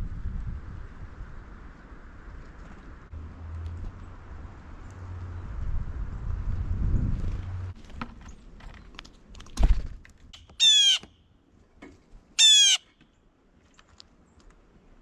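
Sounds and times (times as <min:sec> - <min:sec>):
loud bird calls: 0:10.4 - 0:11.1, 0:12.4 - 0:12.9.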